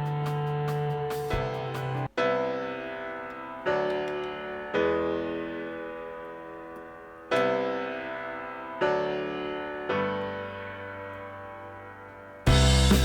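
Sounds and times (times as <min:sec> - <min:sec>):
slow piano chords: 0:00.0 - 0:13.0.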